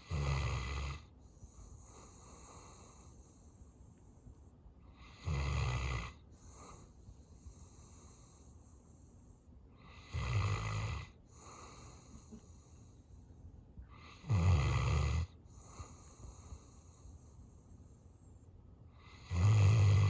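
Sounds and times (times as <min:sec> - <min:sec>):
dog snoring: 0:00.0 - 0:03.4, 0:04.9 - 0:08.5, 0:09.8 - 0:12.7, 0:13.9 - 0:17.1, 0:19.0 - 0:20.0
dog breathing softly: 0:01.0 - 0:05.3, 0:06.2 - 0:14.3, 0:15.4 - 0:19.2.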